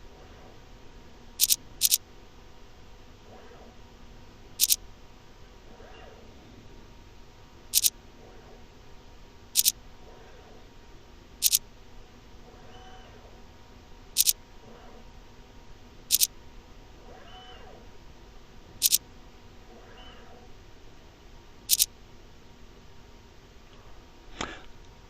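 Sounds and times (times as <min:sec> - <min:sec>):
faint motor whir: 0:00.0 - 0:25.0
sharp double clicks: 0:01.4 - 0:02.0.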